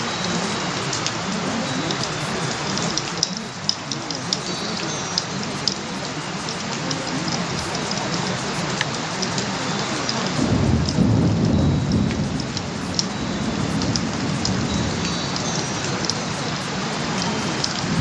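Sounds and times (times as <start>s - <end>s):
rain-like rushing noise: 0.0s - 18.0s
small ticks: 0.4s - 18.0s
low thunder-like rumble: 10.4s - 16.2s, 17.6s - 18.0s.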